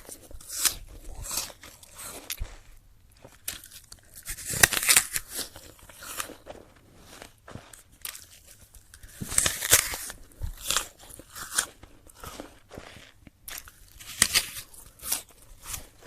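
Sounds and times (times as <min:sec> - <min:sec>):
apple crunching while chewed: 0:00.0 - 0:16.0.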